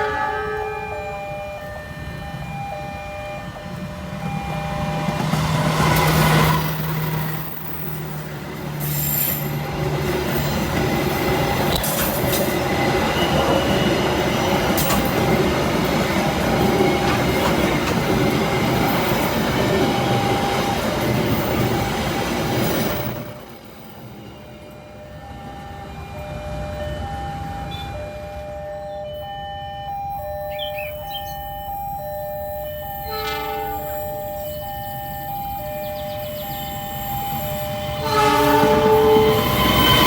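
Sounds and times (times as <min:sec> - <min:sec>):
train wheels rumbling on rail: 0:00.0 - 0:29.2, 0:31.0 - 0:40.0
wheels squealing: 0:04.3 - 0:15.4.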